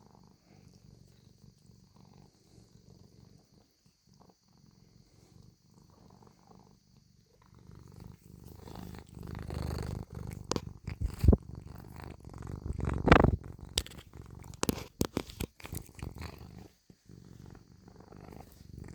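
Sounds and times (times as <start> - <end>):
cat purring: 0.0 - 18.9
bumps or rubbing noises: 8.6 - 16.3.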